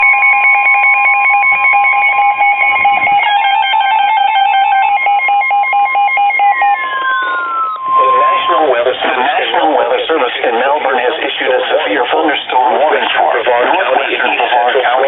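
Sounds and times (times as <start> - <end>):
tone gliding downward: 0.0 - 10.0
stepping beeping tones: 0.0 - 10.2
steady high electronic tone: 0.0 - 11.0.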